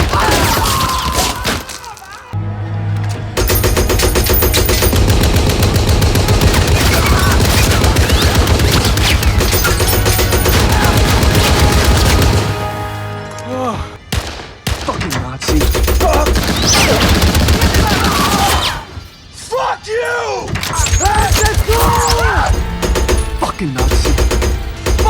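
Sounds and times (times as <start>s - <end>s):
machine guns firing bursts: 3.4s - 12.7s, 14.1s - 18.5s, 20.7s - 25.0s.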